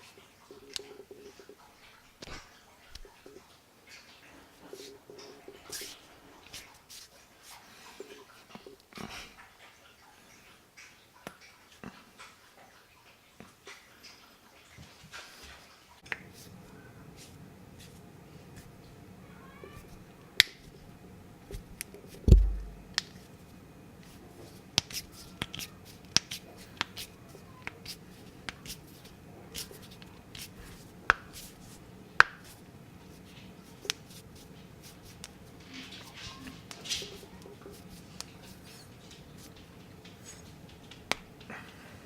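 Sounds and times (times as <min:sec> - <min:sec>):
low thud: 0:22.3 - 0:22.9.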